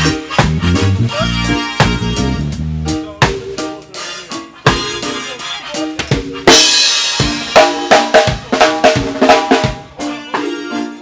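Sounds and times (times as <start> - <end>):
bass drum and snare hits: 0.0 - 3.8, 6.0 - 10.0
live band playing: 0.0 - 11.0.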